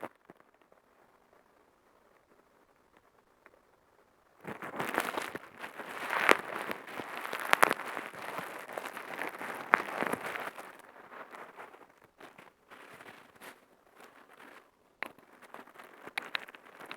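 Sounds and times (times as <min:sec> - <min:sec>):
bubble wrap popping: 0:04.4 - 0:16.9.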